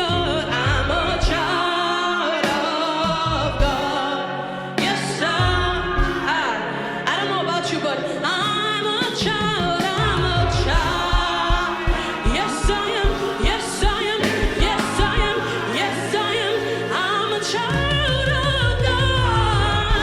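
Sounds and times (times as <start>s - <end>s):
bass drum beat: 0.0s - 1.6s, 3.0s - 4.0s, 5.4s - 6.3s, 9.4s - 16.1s, 17.7s - 20.0s
gospel choir singing: 0.0s - 8.5s, 9.2s - 20.0s
keyboard chords: 0.0s - 20.0s.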